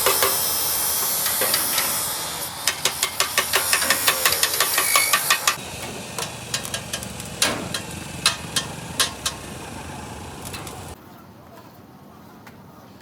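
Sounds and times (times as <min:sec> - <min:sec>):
hammer striking metal: 0:00.0 - 0:09.7
low machine hum: 0:01.3 - 0:11.0.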